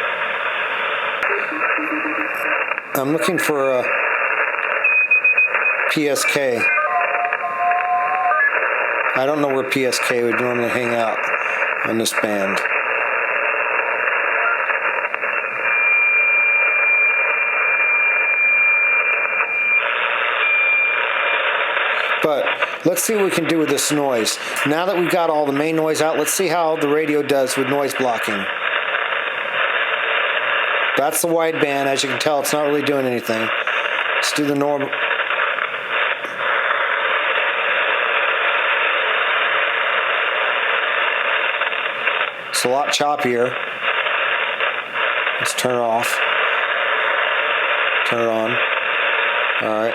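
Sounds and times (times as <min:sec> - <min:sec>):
radio static hiss: 0:00.0 - 0:49.9
thin whistle-like radio tone: 0:06.4 - 0:08.5, 0:15.6 - 0:21.0.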